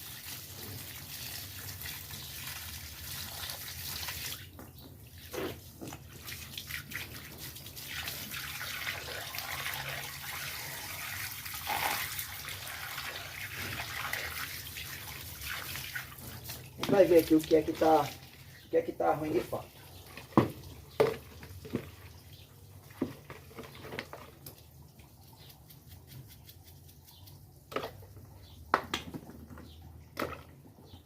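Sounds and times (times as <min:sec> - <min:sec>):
water running from a tap: 0:00.0 - 0:04.5, 0:06.1 - 0:18.4.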